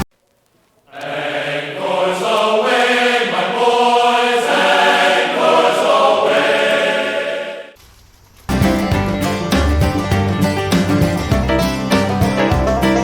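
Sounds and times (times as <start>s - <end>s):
choral chanting: 0.9s - 7.8s.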